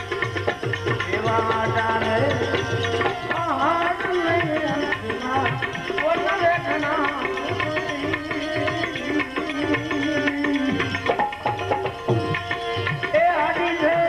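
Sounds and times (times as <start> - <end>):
tabla rhythm: 0.0 - 14.0.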